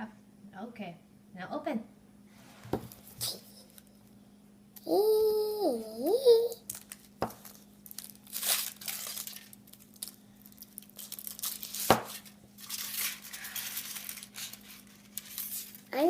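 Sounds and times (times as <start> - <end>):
wrapper being torn and crinkled: 6.6 - 16.0.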